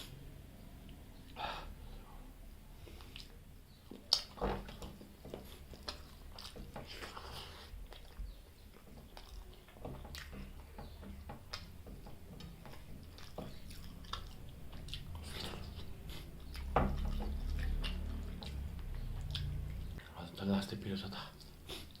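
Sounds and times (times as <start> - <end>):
close chewing and mouth smacks: 2.8 - 20.2, 21.3 - 22.0.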